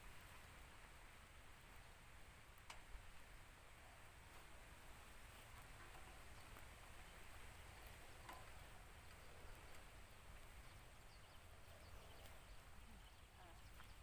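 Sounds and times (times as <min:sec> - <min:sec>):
faint background hiss: 0:00.0 - 0:14.0
faint click: 0:02.6 - 0:02.9.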